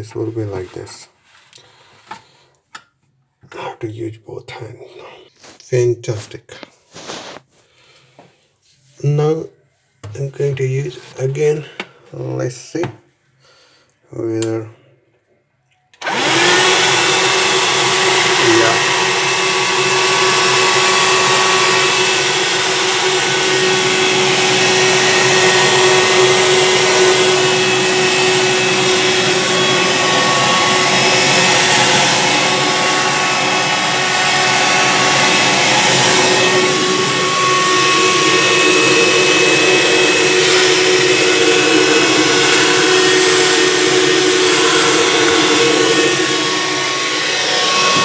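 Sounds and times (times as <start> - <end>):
handheld vacuum cleaner running: 16.0 - 48.0.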